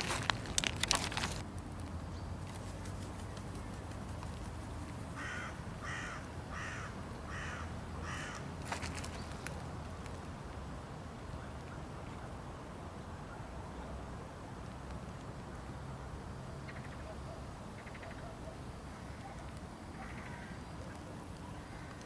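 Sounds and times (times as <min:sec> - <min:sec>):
sharp clicks and crunches: 0:00.0 - 0:02.0.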